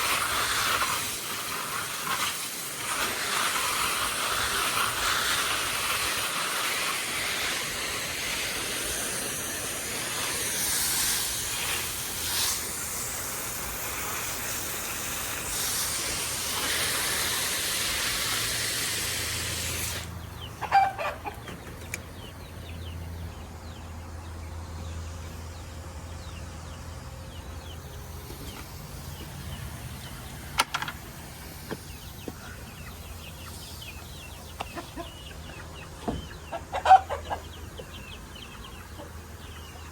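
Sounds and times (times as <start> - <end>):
garden hose spraying water: 0.0 - 22.3, 27.6 - 39.9
chickens clucking: 20.1 - 25.4, 31.7 - 39.9.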